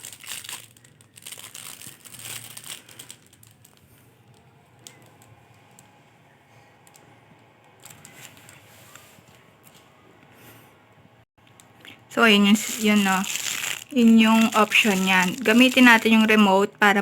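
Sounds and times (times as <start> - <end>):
hands rustling: 12.2 - 16.4.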